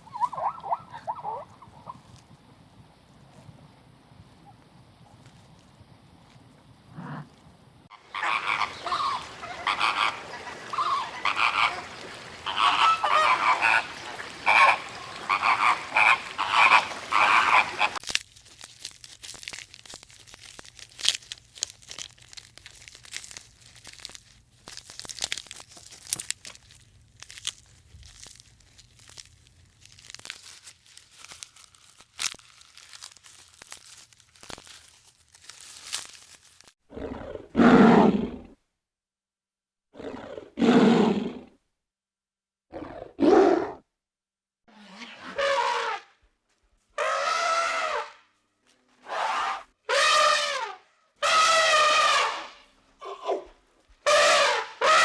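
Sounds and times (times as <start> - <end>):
animal calls: 0.0 - 2.2, 7.9 - 18.0.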